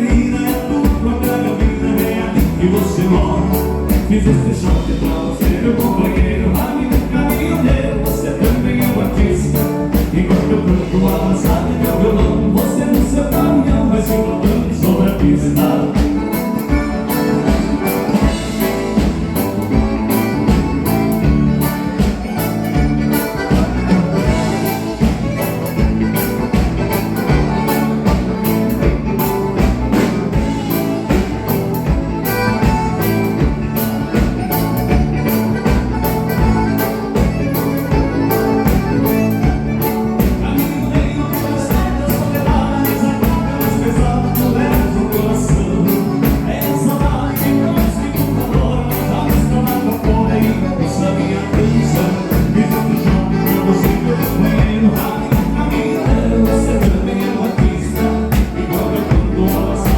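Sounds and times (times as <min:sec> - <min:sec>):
band playing dance music: 0:00.0 - 0:59.9
person singing: 0:00.0 - 0:59.9
steady drum beat: 0:00.0 - 0:59.9.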